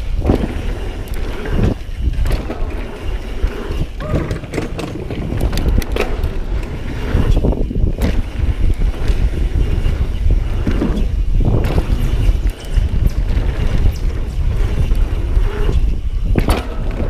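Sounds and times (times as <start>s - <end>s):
bike frame rattling and knocking: 0.0s - 17.0s
wind rushing over microphone: 0.0s - 17.0s.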